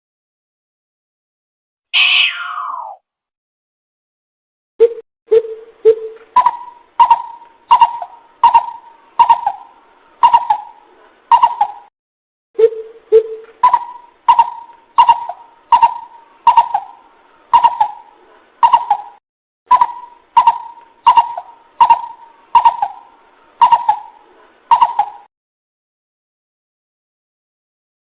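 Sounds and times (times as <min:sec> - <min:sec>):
bird hooting calls: 0:06.4 - 0:11.9, 0:13.2 - 0:25.3.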